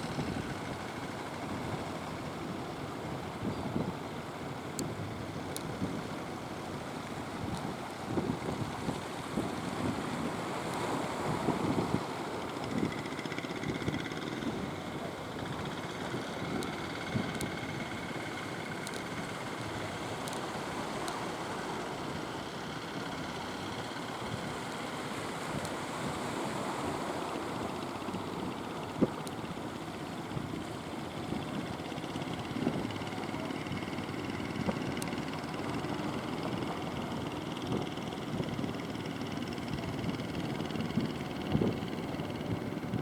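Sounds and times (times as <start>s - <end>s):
boat engines running: 0.0s - 43.0s
wind on microphone: 37.6s - 43.0s.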